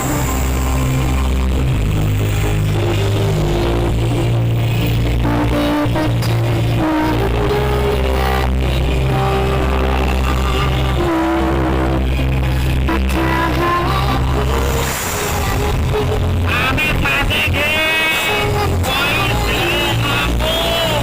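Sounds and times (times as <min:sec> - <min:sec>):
loud dj-style music with heavy bass: 0:00.0 - 0:21.0.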